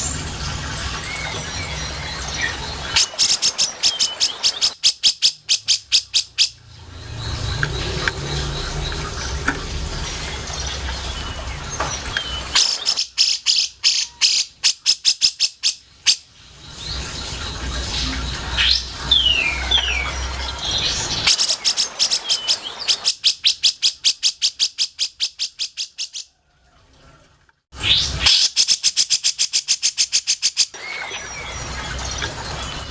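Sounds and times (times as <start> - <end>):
bird chattering: 2.9 - 6.6.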